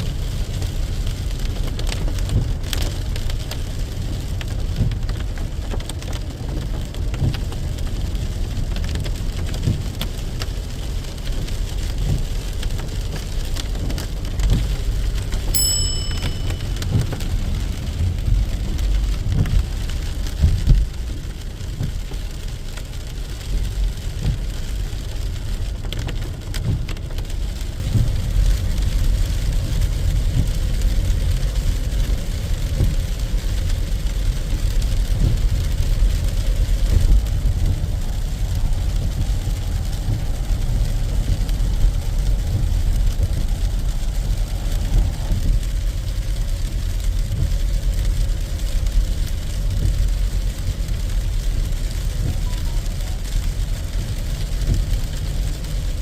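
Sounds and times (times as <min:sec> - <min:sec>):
rain on a vehicle: 0:00.0 - 0:56.0
road and engine rumble: 0:00.0 - 0:56.0
short high beep: 0:15.6 - 0:17.2.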